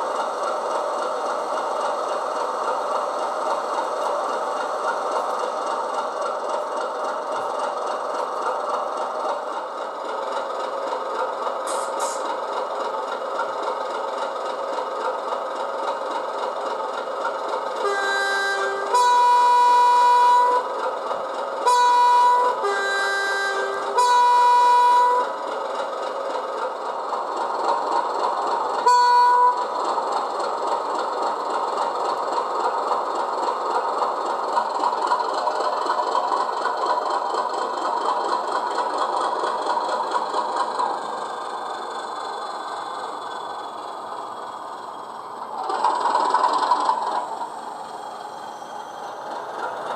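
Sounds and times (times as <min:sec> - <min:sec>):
diesel locomotive engine running: 0:00.0 - 0:49.9
two-tone locomotive horn: 0:17.8 - 0:20.9, 0:21.6 - 0:25.4, 0:28.8 - 0:29.7.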